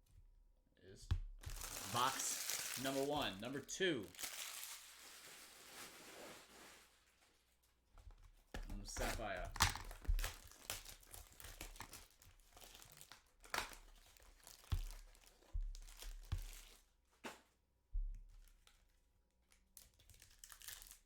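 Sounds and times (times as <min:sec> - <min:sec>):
foil wrappers crinkling and tearing: 0:01.4 - 0:07.4, 0:08.6 - 0:16.9, 0:19.5 - 0:21.0.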